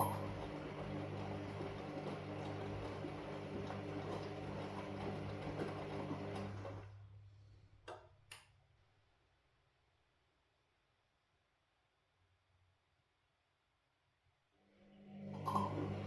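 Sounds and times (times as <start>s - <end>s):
washing machine running: 0.0s - 7.2s, 14.8s - 16.0s.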